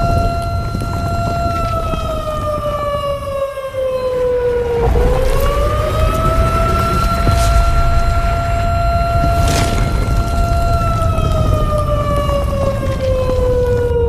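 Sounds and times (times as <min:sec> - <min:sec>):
continuous low rumble: 0:04.2 - 0:14.0.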